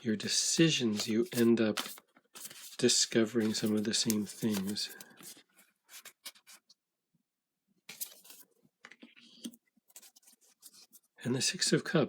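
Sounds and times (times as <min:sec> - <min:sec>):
cards rustling and clicking: 0:00.8 - 0:06.7, 0:07.9 - 0:11.0.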